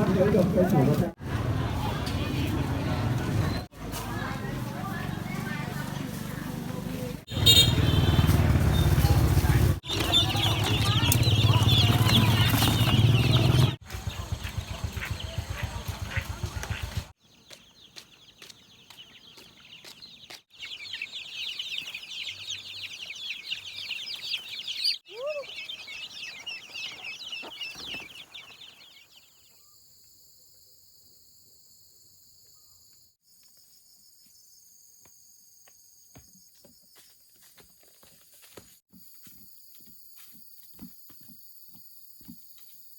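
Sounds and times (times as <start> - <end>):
chicks cheeping: 7.0 - 29.8.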